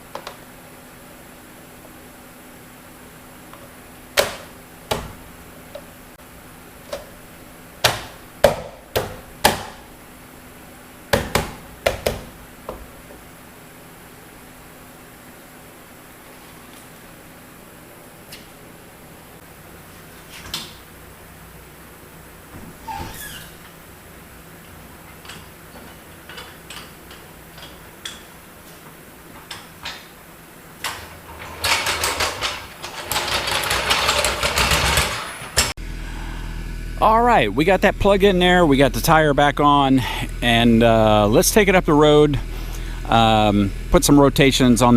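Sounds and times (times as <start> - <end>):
sharp hand tool knocks: 7.8 - 9.8
fast mechanical rattle: 30.8 - 35.7.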